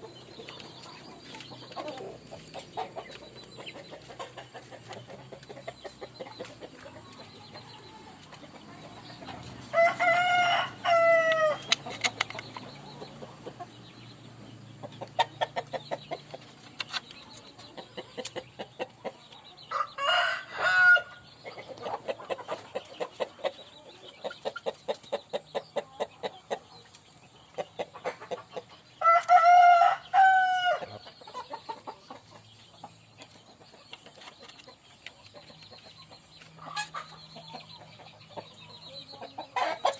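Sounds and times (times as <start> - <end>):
hens clucking: 0.0 - 39.9
rooster crowing: 9.8 - 11.6, 19.7 - 21.2, 29.0 - 30.9.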